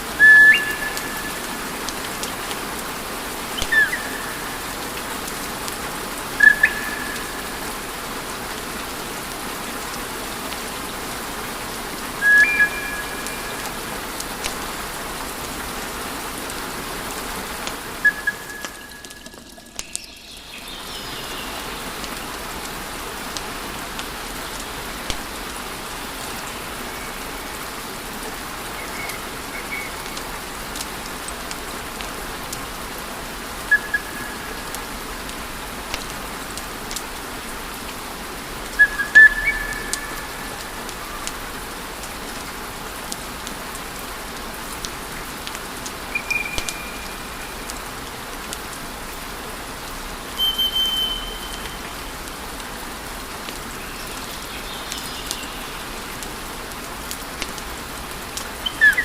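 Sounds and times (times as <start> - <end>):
high whistles from burning logs: 0.2 - 1.5, 12.2 - 13.8, 18.0 - 20.0, 38.8 - 40.1, 46.1 - 47.3, 50.4 - 52.1.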